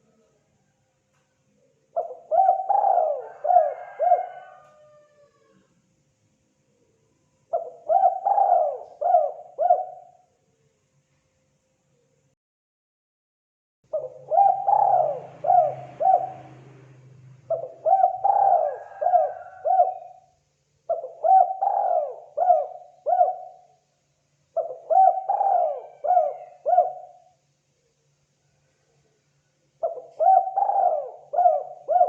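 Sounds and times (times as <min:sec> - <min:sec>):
dove cooing: 0:01.9 - 0:05.6, 0:07.5 - 0:10.2, 0:13.9 - 0:20.3, 0:20.9 - 0:23.8, 0:24.6 - 0:27.4, 0:29.8 - 0:32.0.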